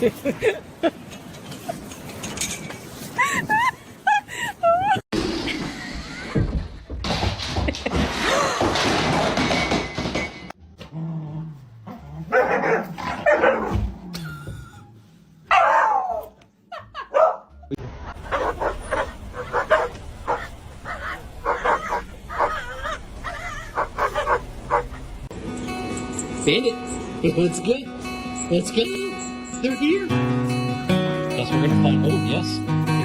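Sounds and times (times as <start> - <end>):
dogs barking and yipping: 12.2 - 13.9, 15.5 - 16.4, 17.0 - 17.5, 18.2 - 27.2.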